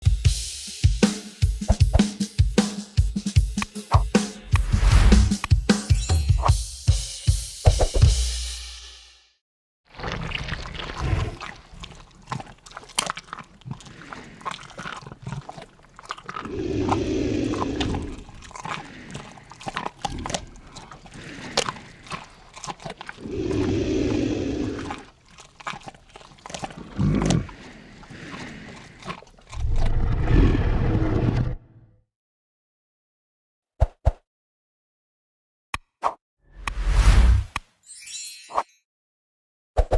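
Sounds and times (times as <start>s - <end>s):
lion tearing and crunching prey: 9.9s - 30.2s
lion growling: 13.3s - 31.6s.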